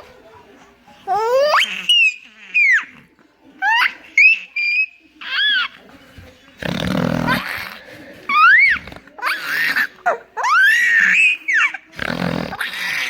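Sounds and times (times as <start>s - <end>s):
baby squealing: 1.1s - 2.9s.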